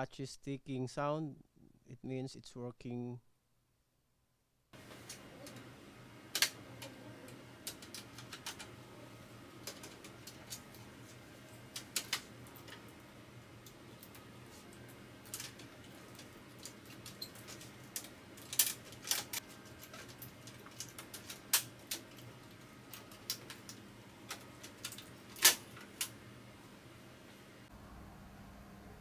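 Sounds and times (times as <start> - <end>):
photocopier sharp clicks: 4.8 - 26.4
faint steady hum: 4.8 - 29.0.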